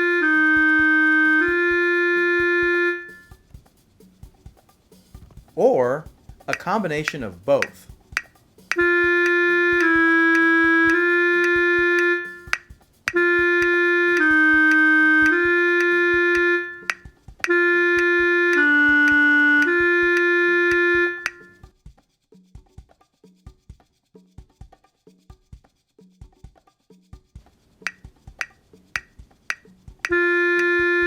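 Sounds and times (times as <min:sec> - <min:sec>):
synthesized held notes: 0:00.0 - 0:03.3, 0:05.6 - 0:07.8, 0:08.7 - 0:21.6, 0:30.0 - 0:31.0
faint metronome clicks: 0:06.5 - 0:21.5, 0:27.9 - 0:30.8.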